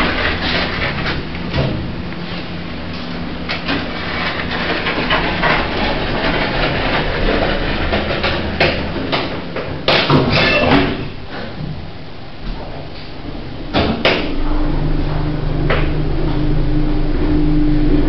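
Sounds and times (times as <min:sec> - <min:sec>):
lift humming: 0:00.0 - 0:18.0
rattling and knocking: 0:03.5 - 0:11.8.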